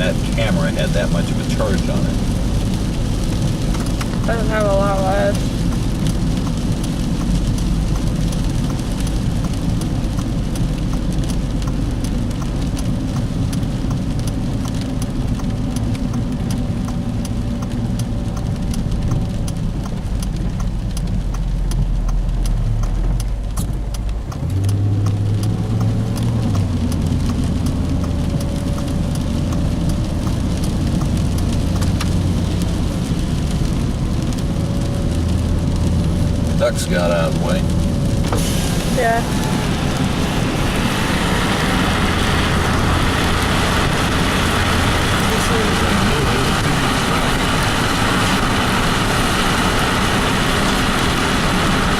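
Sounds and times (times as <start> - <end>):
car engine hum: 0.0 - 51.9
road noise: 0.0 - 51.9
water drops pattering: 3.8 - 38.0.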